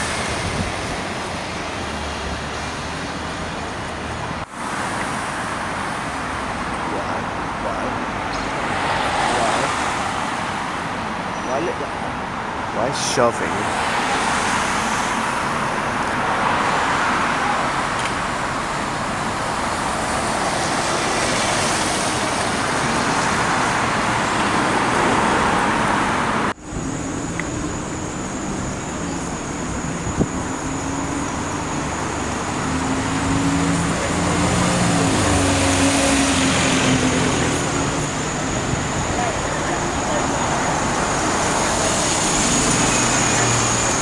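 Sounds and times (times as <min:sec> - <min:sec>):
traffic rushing: 0:00.0 - 0:44.0
vehicle engine humming: 0:00.0 - 0:44.0.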